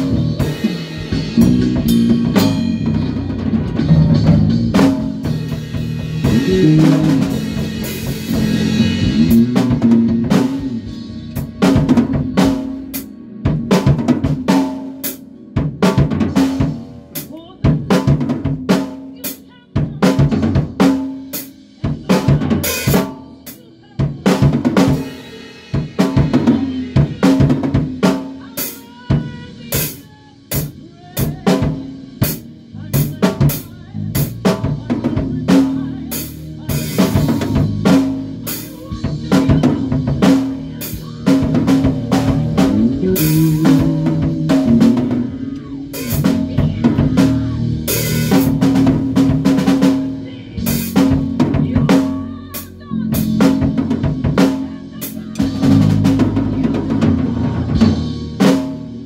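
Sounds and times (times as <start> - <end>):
bass guitar line: 0.0 - 18.9, 31.2 - 59.0
drum kit playing a beat: 0.0 - 59.0.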